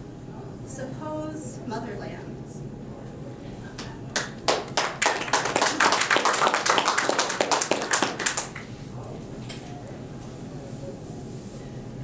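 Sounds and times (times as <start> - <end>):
small audience clapping: 3.8 - 8.8.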